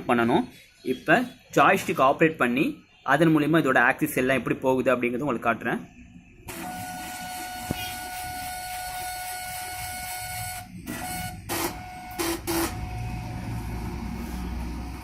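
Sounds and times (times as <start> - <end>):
drive motor high whine: 6.4 - 15.0.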